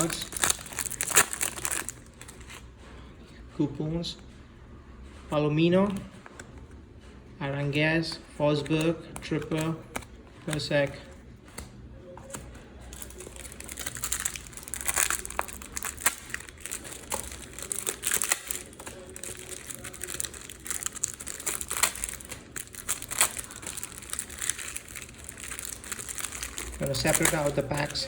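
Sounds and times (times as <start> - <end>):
wrappers crinkling: 0.0 - 2.7, 12.2 - 28.0.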